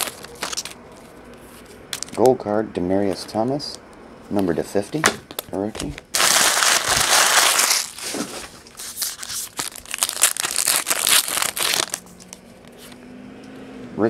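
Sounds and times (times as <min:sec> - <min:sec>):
foil wrapper crinkling: 0:00.0 - 0:01.2, 0:05.3 - 0:12.9
cards crackling and clicking: 0:00.0 - 0:02.3, 0:05.3 - 0:13.0.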